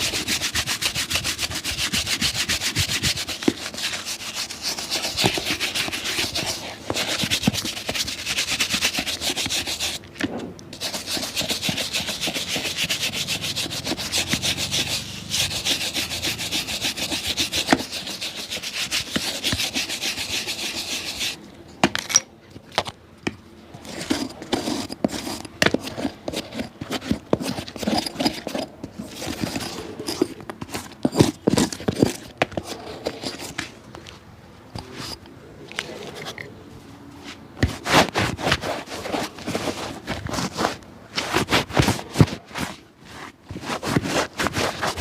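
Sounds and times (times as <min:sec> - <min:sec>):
fast rubbing on a shoe: 0:00.0 - 0:10.0, 0:10.8 - 0:21.4, 0:24.0 - 0:30.3, 0:37.6 - 0:45.0
handling scrapes clicks and knocks: 0:21.0 - 0:36.5, 0:37.2 - 0:45.0.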